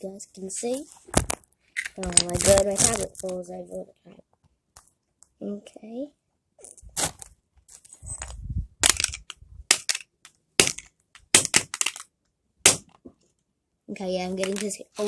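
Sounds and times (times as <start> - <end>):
heavy crunch: 6.8 - 10.0
phone casing cracking: 8.8 - 12.1.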